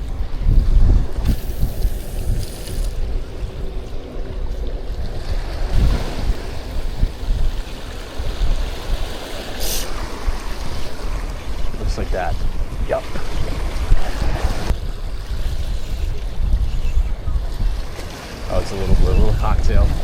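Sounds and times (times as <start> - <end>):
wind buffeting microphone: 0.0 - 20.0
water washing: 1.2 - 3.8.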